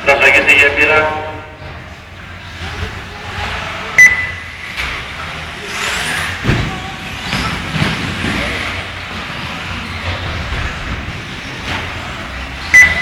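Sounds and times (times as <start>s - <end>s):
short steady beep: 4.0s - 4.6s, 12.7s - 13.0s
electric buggy motors whining: 4.6s - 13.0s.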